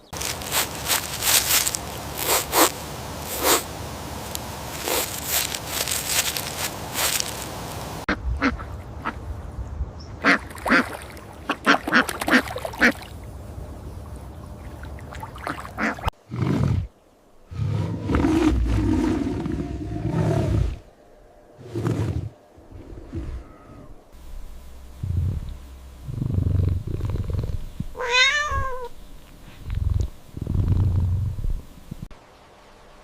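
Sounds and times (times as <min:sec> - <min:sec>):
ducks quacking: 0:00.0 - 0:09.2, 0:10.2 - 0:13.1, 0:15.2 - 0:16.1
clicking and rustling: 0:04.3 - 0:07.9
deeper animal call: 0:21.6 - 0:24.1.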